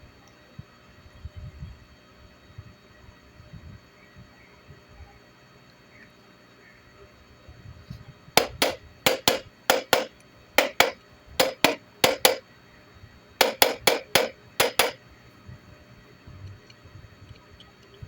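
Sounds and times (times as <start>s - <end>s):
sharp taps on metal: 8.4s - 12.4s, 13.4s - 15.0s.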